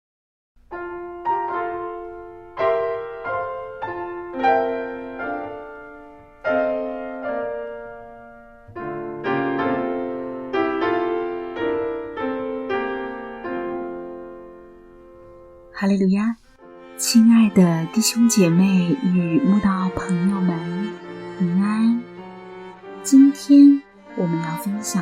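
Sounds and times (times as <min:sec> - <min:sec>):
slow gentle solo piano: 0:00.7 - 0:15.7.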